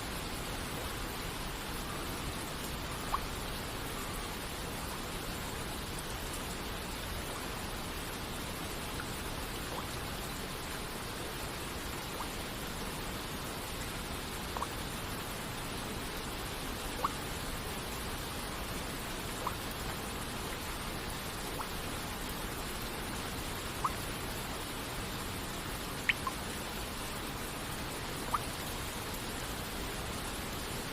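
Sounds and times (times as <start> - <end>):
water droplets plinking: 3.0 - 3.3, 19.4 - 19.6, 26.1 - 26.4, 28.3 - 28.5.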